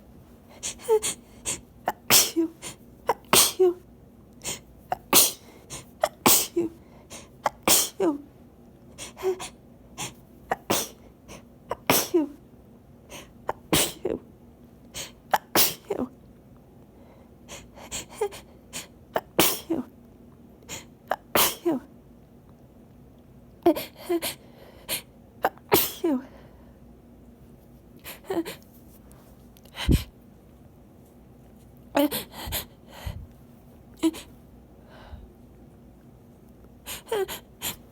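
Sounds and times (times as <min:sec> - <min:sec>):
person sneezing: 0:00.6 - 0:03.8, 0:04.4 - 0:08.1, 0:09.0 - 0:12.4, 0:13.2 - 0:14.2, 0:15.0 - 0:16.0, 0:17.5 - 0:19.9, 0:20.7 - 0:21.8, 0:25.4 - 0:26.3.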